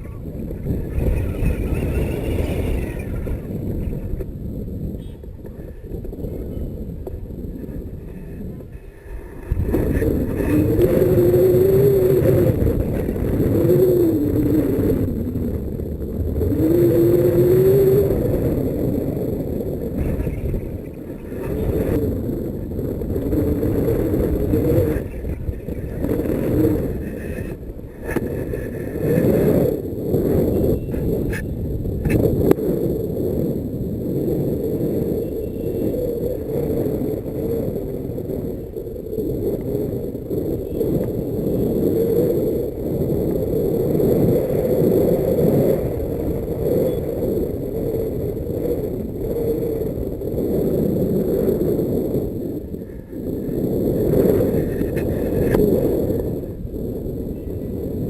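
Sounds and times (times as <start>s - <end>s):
wind buffeting microphone: 0.0s - 58.0s
wavering tone: 9.6s - 15.2s.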